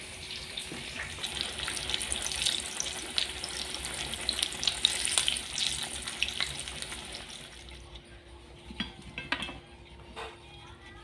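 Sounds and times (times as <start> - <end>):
food sizzling in hot oil: 0.0 - 7.8.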